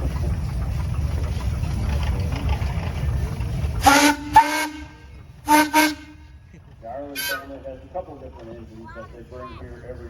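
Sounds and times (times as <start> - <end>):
low steady rumble: 0.0 - 10.0
steam whistle toots: 3.8 - 6.3.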